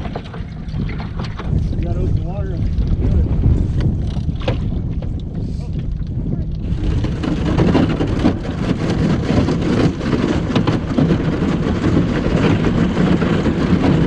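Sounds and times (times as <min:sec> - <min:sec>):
ice crackling against boat hull: 0:06.0 - 0:14.0.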